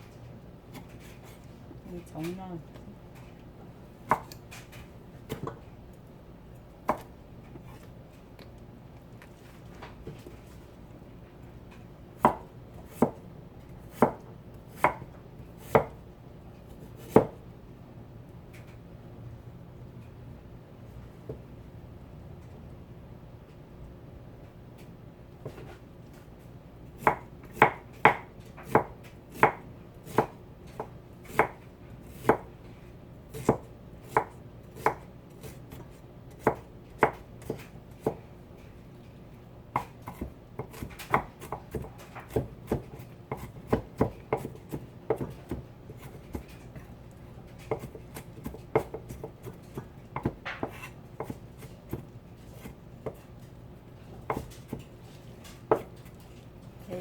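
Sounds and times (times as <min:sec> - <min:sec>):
knife chopping on cutting board: 0:04.1 - 0:04.4, 0:05.3 - 0:05.6, 0:06.8 - 0:07.8, 0:12.2 - 0:13.2, 0:13.9 - 0:16.0, 0:16.7 - 0:17.4, 0:27.0 - 0:32.5, 0:33.3 - 0:38.2, 0:39.7 - 0:46.9, 0:47.6 - 0:53.3, 0:54.1 - 0:56.2.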